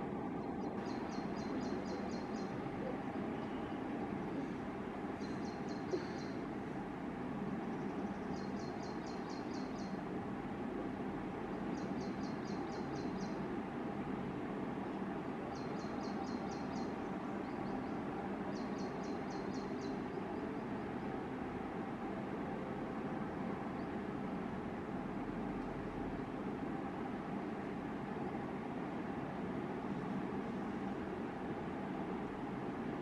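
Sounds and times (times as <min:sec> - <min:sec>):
background hum: 0:00.0 - 0:33.0.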